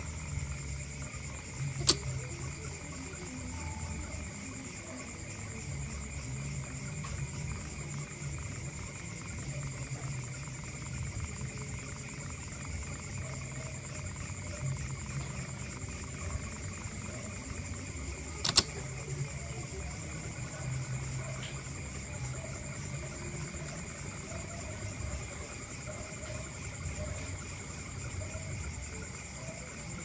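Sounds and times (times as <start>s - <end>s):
sharp click: 1.8s - 2.3s, 18.4s - 18.8s.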